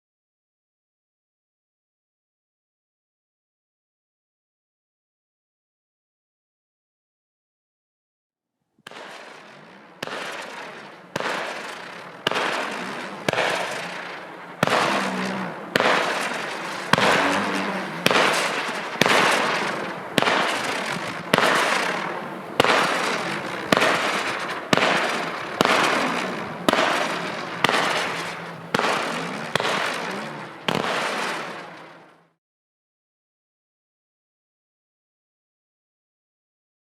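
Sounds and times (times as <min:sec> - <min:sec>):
firework shots launching: 0:08.9 - 0:32.2
firework hiss: 0:09.1 - 0:32.0.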